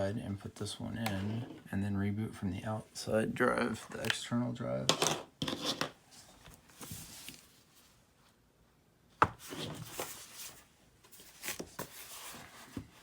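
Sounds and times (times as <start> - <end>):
small objects handled on work surface: 4.9 - 7.5.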